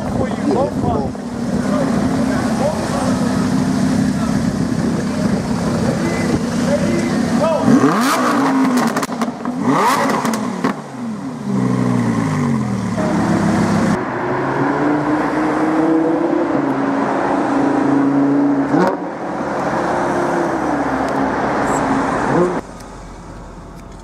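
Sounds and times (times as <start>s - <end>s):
sports car engine revving: 0.3s - 24.0s.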